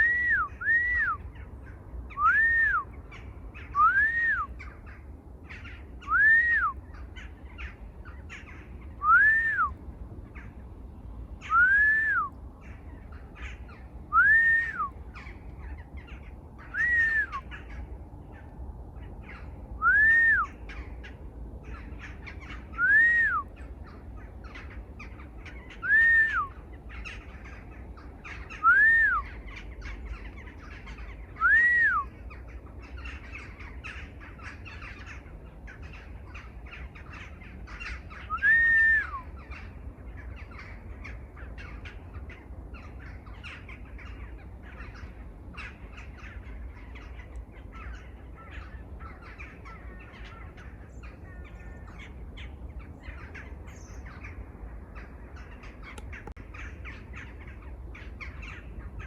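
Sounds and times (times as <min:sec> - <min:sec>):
bird whistling: 0:00.0 - 0:01.2, 0:02.2 - 0:02.9, 0:03.7 - 0:04.6, 0:06.0 - 0:06.8, 0:09.0 - 0:09.8, 0:11.4 - 0:12.4, 0:14.1 - 0:15.0, 0:16.6 - 0:17.6, 0:19.8 - 0:20.6, 0:22.7 - 0:23.5, 0:25.7 - 0:26.6, 0:28.5 - 0:29.3, 0:31.4 - 0:32.1, 0:38.1 - 0:39.3
low background rumble: 0:00.0 - 0:59.0.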